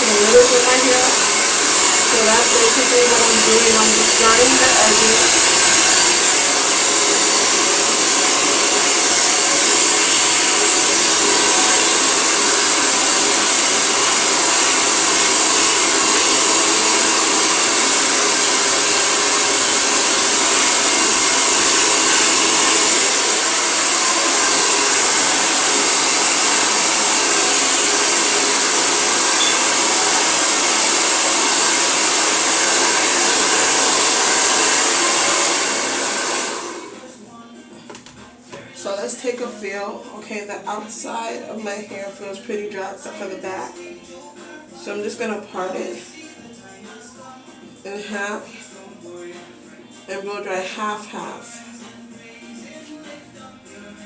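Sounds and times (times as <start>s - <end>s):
hair dryer blowing: 0.0s - 37.2s.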